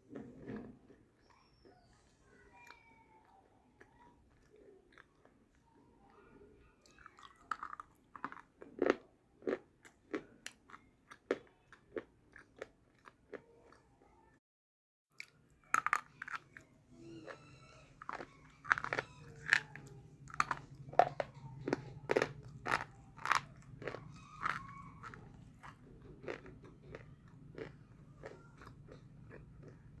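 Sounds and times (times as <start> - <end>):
person crunching slate pencils: 15.6 - 29.8.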